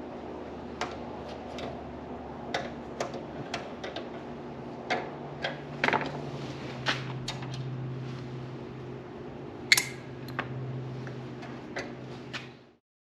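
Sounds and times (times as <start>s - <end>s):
steady low hum: 0.0s - 12.8s
hand tools clicking and tapping: 9.7s - 10.0s.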